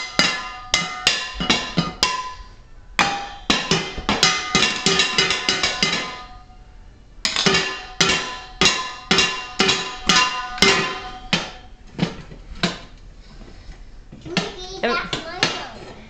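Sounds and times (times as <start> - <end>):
kitchen items struck as percussion: 0.0 - 6.5, 7.2 - 11.8.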